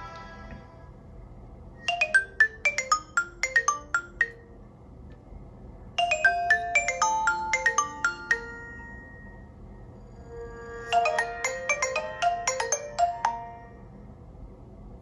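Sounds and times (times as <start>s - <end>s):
phone ringtone bright notes: 1.8s - 4.4s, 6.0s - 9.5s, 10.3s - 13.9s.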